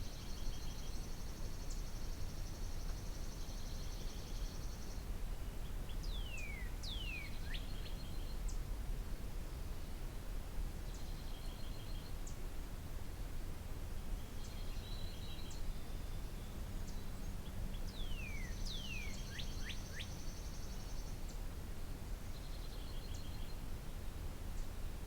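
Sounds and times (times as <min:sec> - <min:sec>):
songbirds singing: 0:14.2 - 0:21.3.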